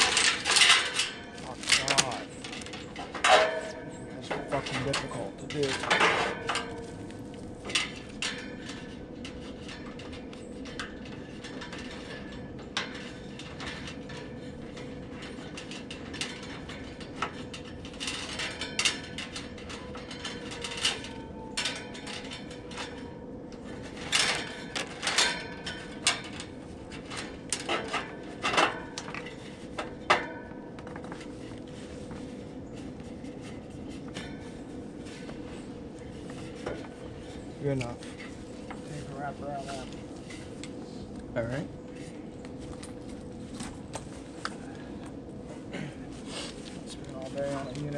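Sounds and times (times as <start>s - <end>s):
tools clicking and knocking on metal: 0.0s - 6.8s.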